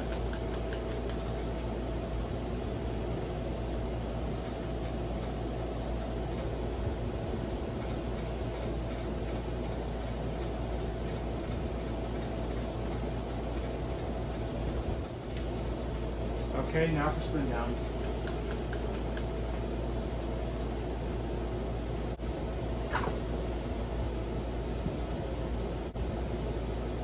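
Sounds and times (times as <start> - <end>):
ceiling fan motor hum: 0.0 - 27.0
fan vibrating: 0.0 - 27.0.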